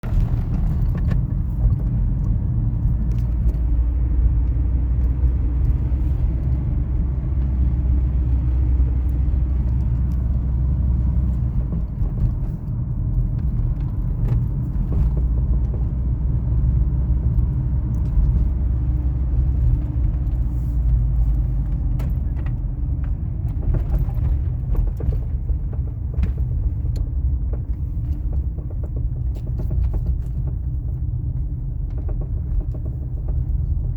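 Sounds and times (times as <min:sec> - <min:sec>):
car road rumble: 0:00.0 - 0:33.9
suspension knocks: 0:09.7 - 0:33.9.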